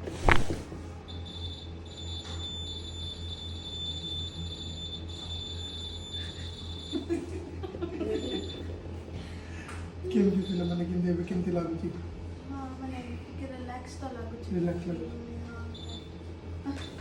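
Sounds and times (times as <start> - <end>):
high-pitched electronic whine: 0.0 - 7.2, 15.7 - 16.2.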